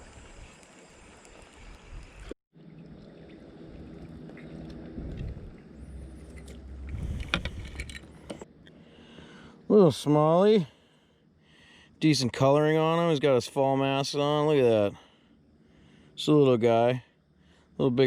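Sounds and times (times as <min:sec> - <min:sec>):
water lapping: 0:00.0 - 0:07.8
wind: 0:00.0 - 0:18.0
low steady rumble: 0:02.6 - 0:17.9.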